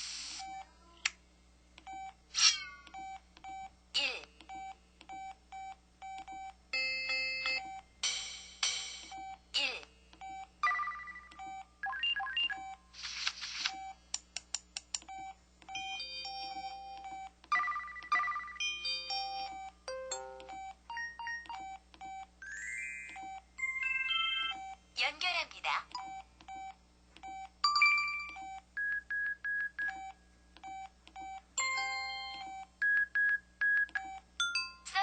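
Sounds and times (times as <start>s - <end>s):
electronic beeps chimes and jingles: 10.6s - 12.8s, 15.8s - 24.8s.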